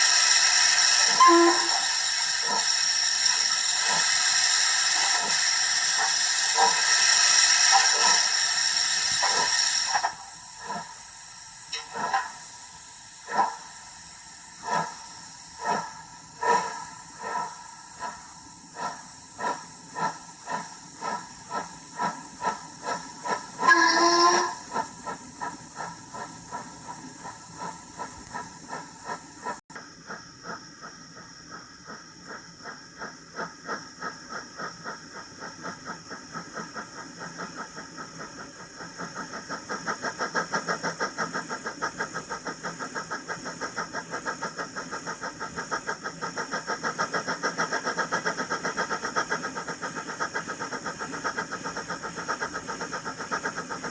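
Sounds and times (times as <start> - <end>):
short steam whistle: 0.0 - 10.9, 21.9 - 25.9
steady steam hiss: 0.0 - 53.9
steam locomotive exhaust chuffs: 0.0 - 53.9.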